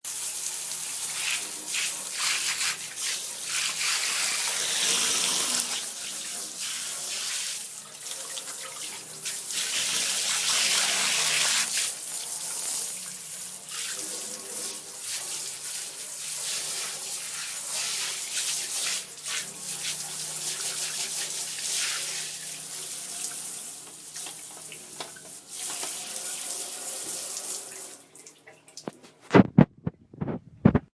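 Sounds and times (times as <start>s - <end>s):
shower spray hissing and splashing: 0.1s - 28.0s.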